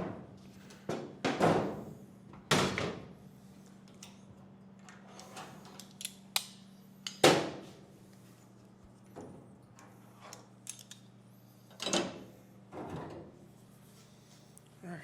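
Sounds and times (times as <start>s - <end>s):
steady low hum: 0.0s - 15.0s
tools and parts clicking: 4.8s - 7.2s, 10.3s - 11.1s.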